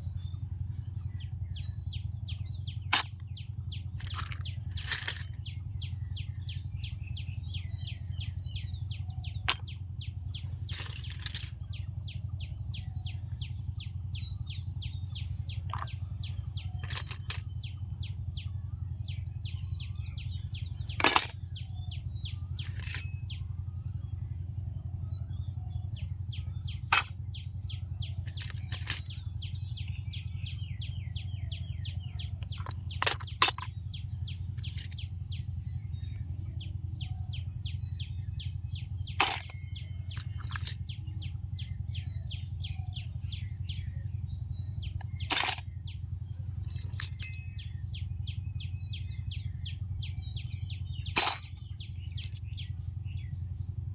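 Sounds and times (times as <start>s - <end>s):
steady low hum: 14.2s - 53.9s.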